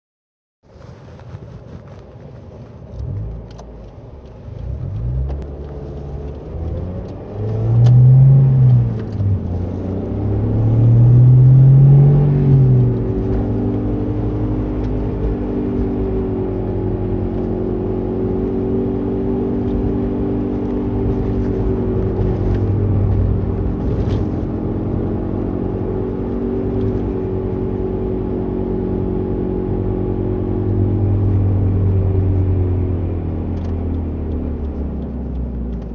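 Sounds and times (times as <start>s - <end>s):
car engine revving: 3.0s - 35.9s.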